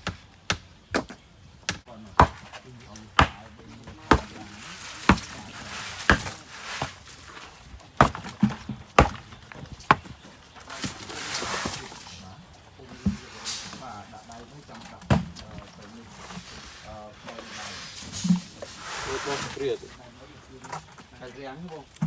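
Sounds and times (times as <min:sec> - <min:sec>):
hand tool strikes: 0:01.7 - 0:05.4.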